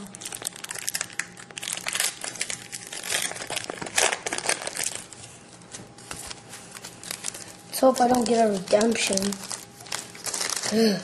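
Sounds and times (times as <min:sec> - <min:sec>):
card wrappers crinkling and rustling: 0:00.0 - 0:11.0.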